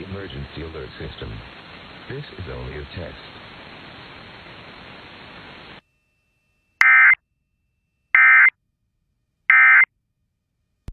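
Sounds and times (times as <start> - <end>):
digital data tone bursts: 6.8 - 7.2, 9.5 - 9.8.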